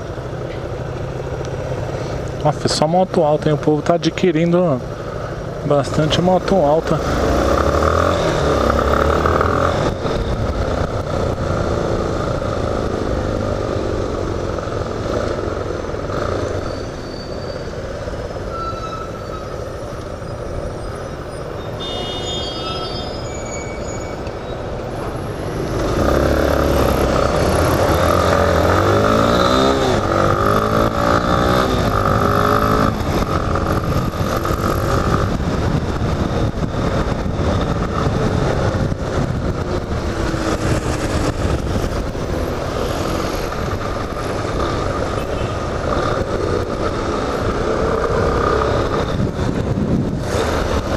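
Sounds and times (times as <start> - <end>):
motorcycle engine accelerating: 6.4 - 16.5, 25.5 - 50.9.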